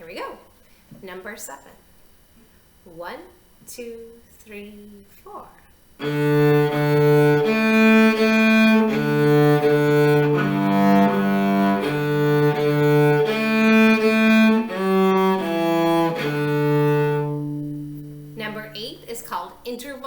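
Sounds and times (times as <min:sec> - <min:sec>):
cello bowed notes: 0:06.0 - 0:19.0.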